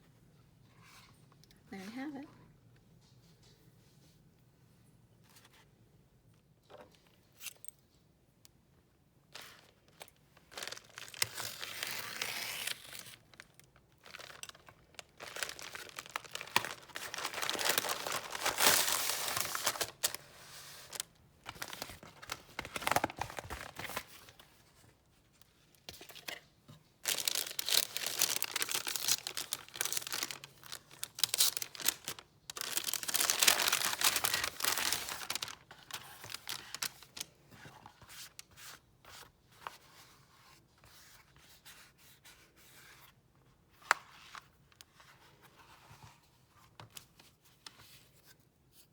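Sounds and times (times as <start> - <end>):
packaging tearing and crinkling: 10.5 - 20.2, 27.0 - 37.2.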